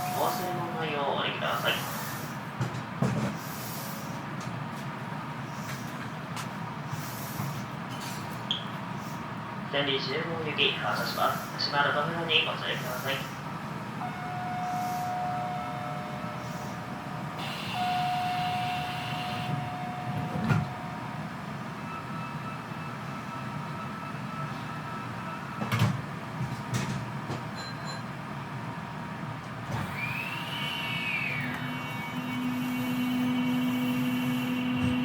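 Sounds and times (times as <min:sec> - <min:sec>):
low train motor tone: 0:00.0 - 0:26.4, 0:27.0 - 0:35.0
train doors clunking shut: 0:02.2 - 0:03.6, 0:14.0 - 0:21.4, 0:25.4 - 0:28.2, 0:34.3 - 0:35.0.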